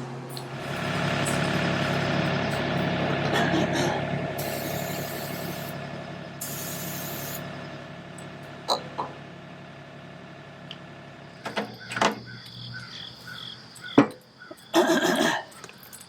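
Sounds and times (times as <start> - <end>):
diesel engine running: 0.0 - 16.0
short hisses: 3.9 - 5.8, 6.4 - 7.4.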